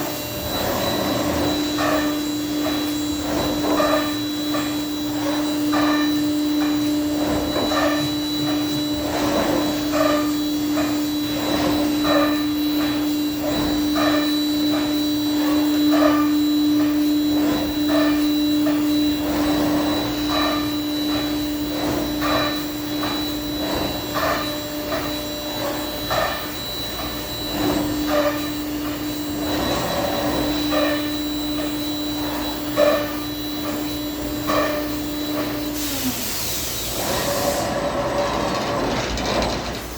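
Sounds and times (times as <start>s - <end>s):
router spindle whine: 0.0s - 36.3s
constant machine hum: 0.0s - 39.9s
short irregular machine noises: 19.1s - 39.9s.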